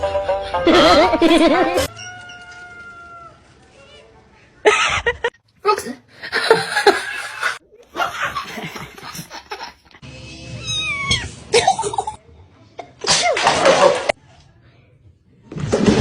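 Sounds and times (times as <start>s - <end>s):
music: 0.0s - 1.9s
people laughing: 0.3s - 1.9s, 6.1s - 10.0s
cats meowing and yowling: 1.8s - 3.5s, 10.5s - 11.4s.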